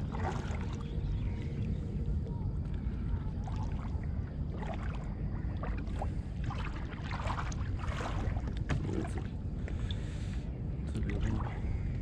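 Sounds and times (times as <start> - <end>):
wind rumble on microphone: 0.0 - 12.0
water splashing against kayak: 2.8 - 10.1.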